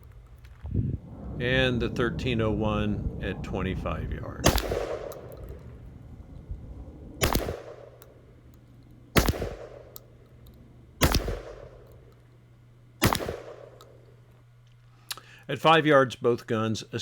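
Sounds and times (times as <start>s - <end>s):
shotgun shots echoing: 4.4s - 5.6s, 7.2s - 8.2s, 9.1s - 10.0s, 11.0s - 12.1s, 13.0s - 14.0s.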